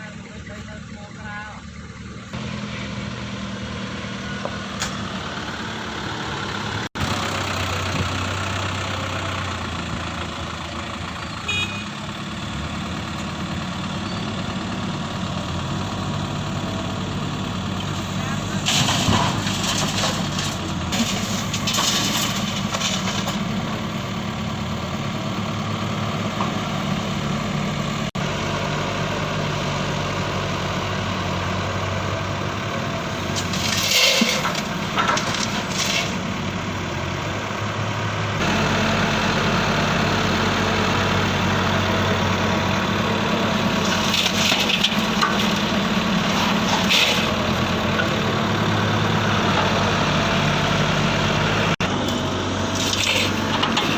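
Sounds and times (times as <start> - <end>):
crunching and scraping: 18.2 - 23.6, 33.2 - 36.3, 43.7 - 48.2, 51.9 - 53.9.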